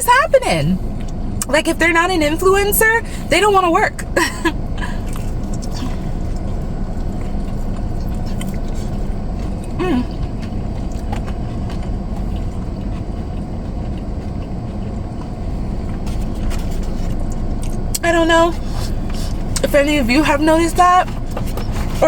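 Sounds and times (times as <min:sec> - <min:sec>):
car rumble from inside cabin: 0:00.0 - 0:22.0
person humming: 0:09.8 - 0:10.2.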